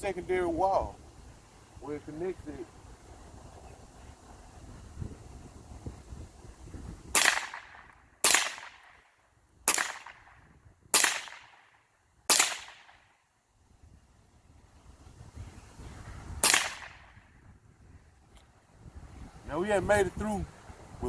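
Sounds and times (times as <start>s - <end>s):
rifle shots with echo: 7.1s - 9.1s, 9.7s - 13.1s, 16.4s - 17.2s.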